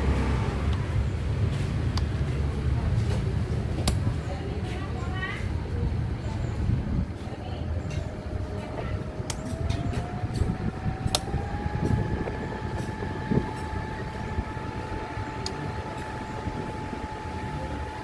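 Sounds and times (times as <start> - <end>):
fan motor whine: 0.0 - 18.0
low rush of air: 5.8 - 18.0.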